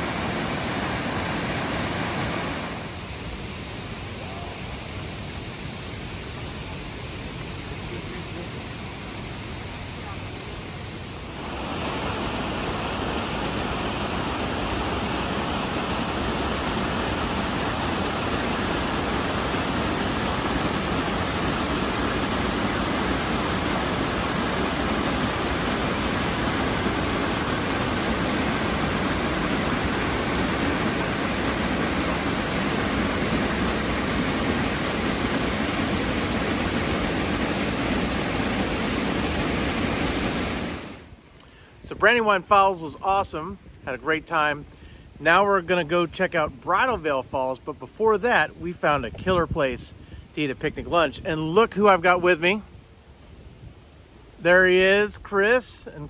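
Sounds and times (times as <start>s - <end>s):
waterfall roaring: 0.0s - 41.2s.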